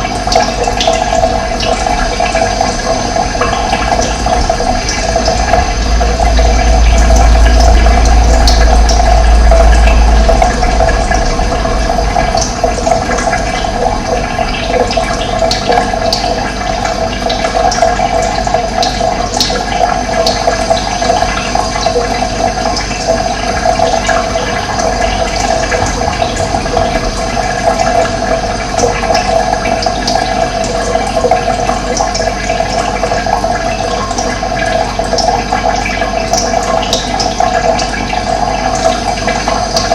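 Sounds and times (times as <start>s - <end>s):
running water rushing: 0.0s - 39.9s
low rumble: 0.7s - 19.4s, 21.2s - 32.2s.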